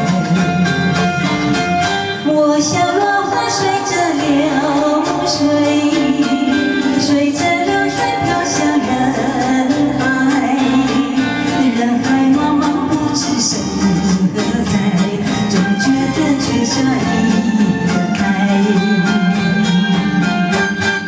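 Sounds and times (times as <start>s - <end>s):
accompaniment with steady beat: 0.0s - 2.3s
woman singing: 2.1s - 21.0s.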